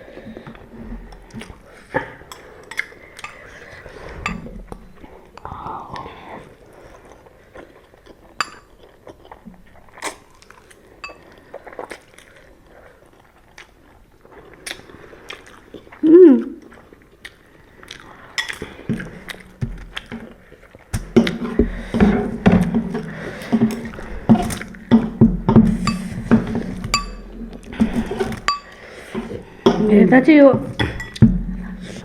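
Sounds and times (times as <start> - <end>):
chewing noodles: 0.0 - 29.7
utensils clinking against bowl: 2.3 - 4.6, 11.0 - 11.3, 23.3 - 31.3.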